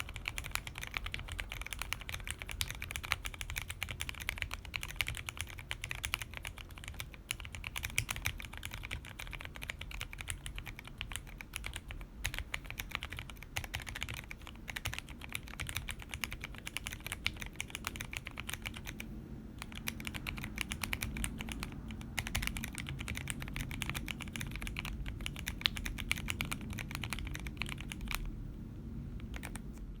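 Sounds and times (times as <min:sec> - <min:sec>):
typing on mechanical keyboard: 0:00.0 - 0:28.3, 0:29.2 - 0:29.8.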